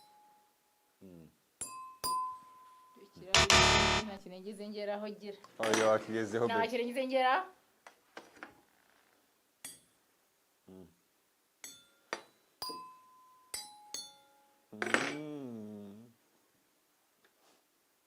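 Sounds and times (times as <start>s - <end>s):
tableware clinking: 11.6s - 14.2s
person's voice gliding pitch: 14.8s - 16.1s.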